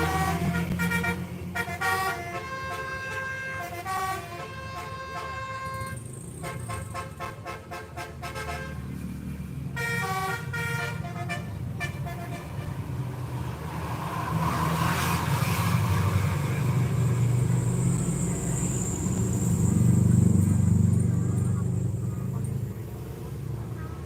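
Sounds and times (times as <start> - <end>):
multi-tone musical air horn: 0.0 - 8.8, 9.8 - 12.8
heavy bus engine passing: 0.0 - 24.0.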